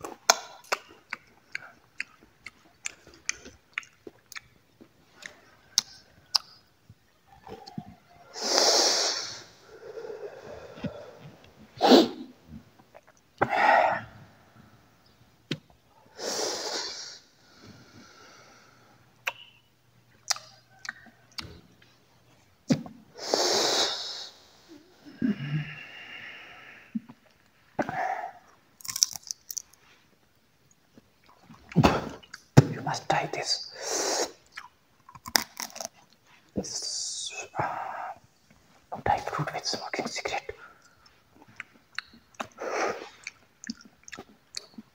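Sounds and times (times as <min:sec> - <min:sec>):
mouth chewing dry fruit: 0:00.0 - 0:08.2, 0:12.7 - 0:13.4, 0:19.2 - 0:22.5, 0:27.0 - 0:33.5, 0:34.4 - 0:37.4, 0:39.2 - 0:44.9
hissing smoke exhales: 0:08.3 - 0:12.3, 0:16.2 - 0:19.0, 0:23.2 - 0:27.0, 0:33.7 - 0:34.4.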